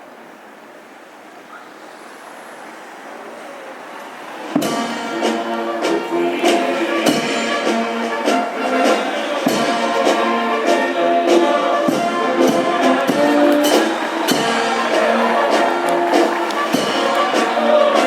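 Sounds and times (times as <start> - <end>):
brass band playing: 4.6 - 18.0
steady drum beat: 4.6 - 18.0.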